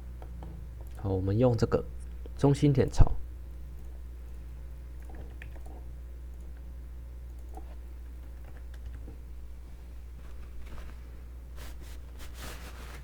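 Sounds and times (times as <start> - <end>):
steady low hum: 0.0 - 13.0
computer mouse and keyboard clicks: 5.0 - 6.6, 7.3 - 9.2.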